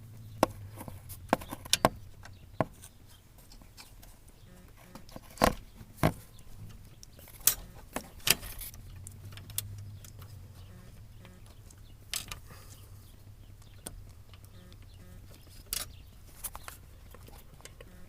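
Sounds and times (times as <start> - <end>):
low hum: 6.5 - 16.2
metal parts clicking and knocking: 6.7 - 10.4, 11.2 - 12.4, 13.7 - 18.0.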